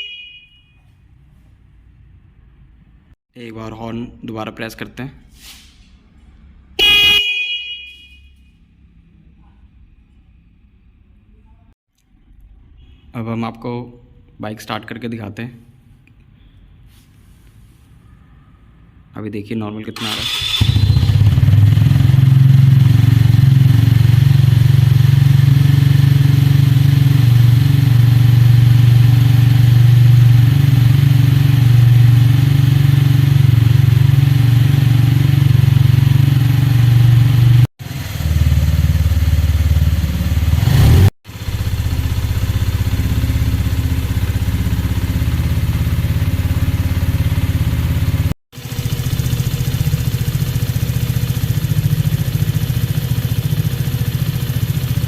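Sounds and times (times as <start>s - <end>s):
motorcycle engine idling: 20.1s - 55.0s.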